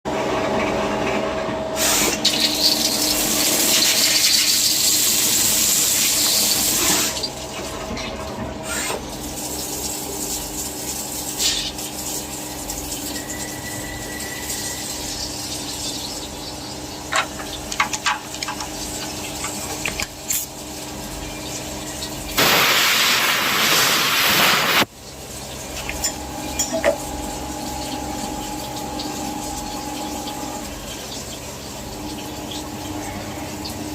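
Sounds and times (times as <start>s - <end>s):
loud hissing spray: 1.8s - 2.5s, 22.4s - 24.9s
machine humming: 23.4s - 33.9s.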